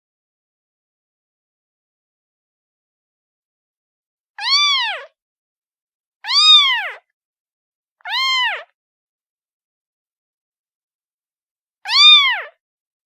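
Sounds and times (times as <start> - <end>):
kitten meowing: 4.4 - 5.1, 6.2 - 7.0, 8.0 - 8.7, 11.9 - 12.6.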